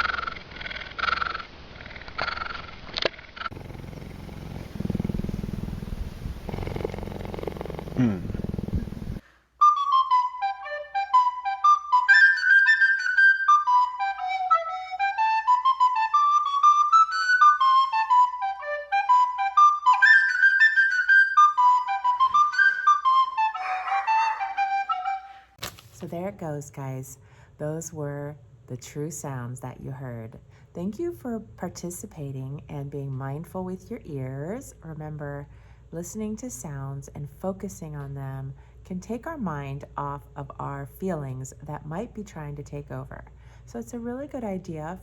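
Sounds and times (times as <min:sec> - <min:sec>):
low noisy rumbling: 0:03.5 - 0:09.2
solo flute melody: 0:09.6 - 0:25.6.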